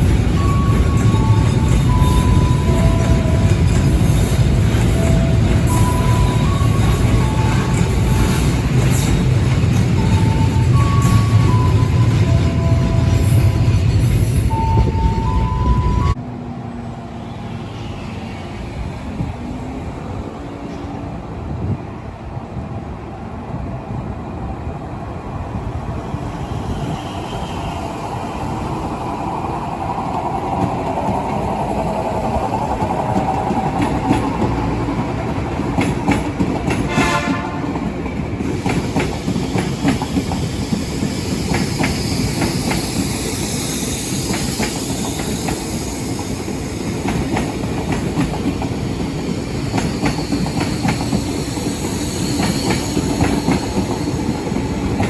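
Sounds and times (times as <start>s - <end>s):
train wheels clicking over rail joints: 29.9s - 55.0s.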